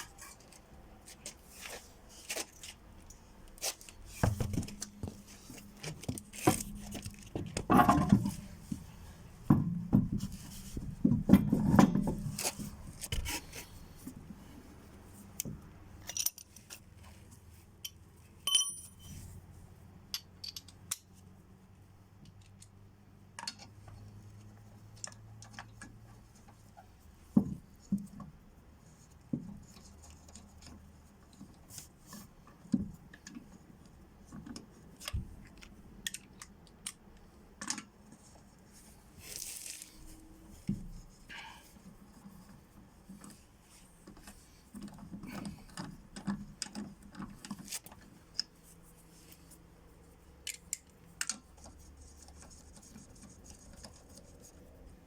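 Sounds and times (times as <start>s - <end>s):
metal tools clinking: 18.5s - 19.1s.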